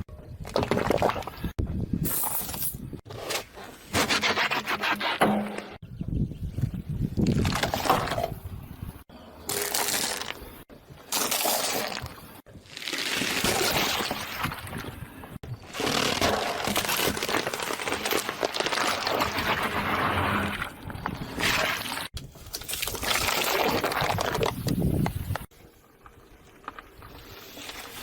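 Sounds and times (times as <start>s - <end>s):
objects crushed under car tyre: 15.6s - 22.1s.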